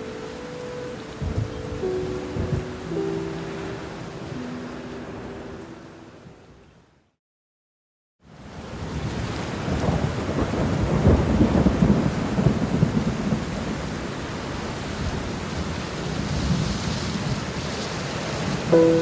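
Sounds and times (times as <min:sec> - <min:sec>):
steady rain: 0:00.0 - 0:07.0, 0:08.3 - 0:19.0
rolling thunder rumble: 0:01.1 - 0:03.2, 0:09.6 - 0:17.6.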